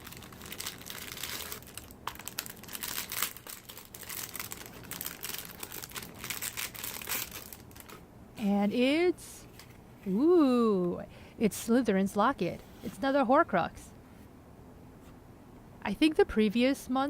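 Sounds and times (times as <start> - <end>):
packaging crinkling: 0.0 - 8.0.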